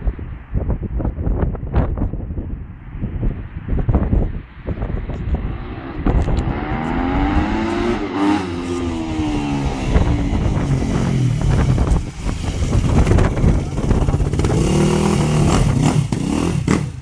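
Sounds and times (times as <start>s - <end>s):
dirt bike riding past: 5.4s - 17.0s.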